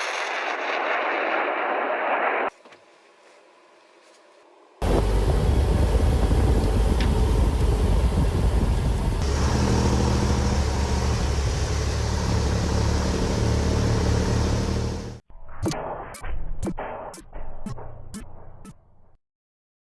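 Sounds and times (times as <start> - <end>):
heavy vehicle engine running: 4.8 - 15.2.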